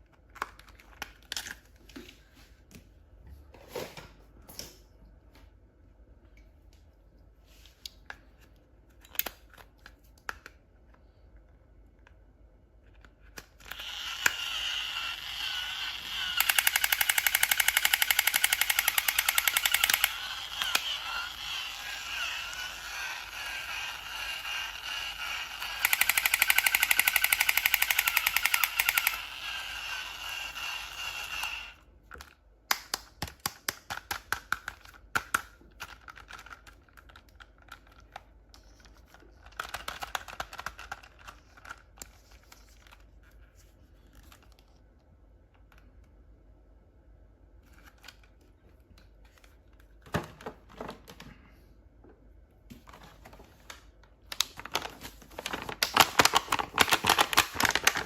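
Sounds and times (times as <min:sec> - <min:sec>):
toy gunfire rattling: 0:13.8 - 0:31.7.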